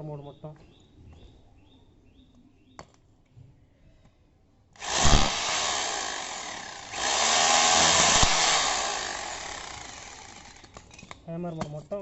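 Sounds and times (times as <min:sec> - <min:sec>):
rotary hammer chipping: 0:04.8 - 0:11.2.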